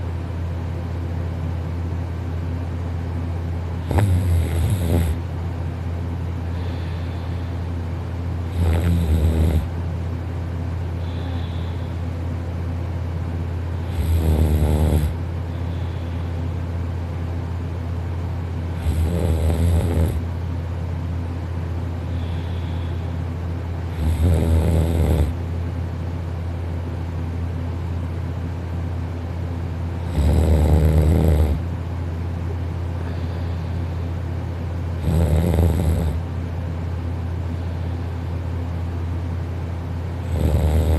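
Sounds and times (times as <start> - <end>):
steady low hum: 0.0 - 40.9
person snoring: 3.8 - 5.2, 8.5 - 9.7, 11.0 - 12.0, 13.8 - 16.1, 18.7 - 20.2, 23.9 - 25.4, 30.0 - 31.6, 35.0 - 36.2, 40.2 - 40.9.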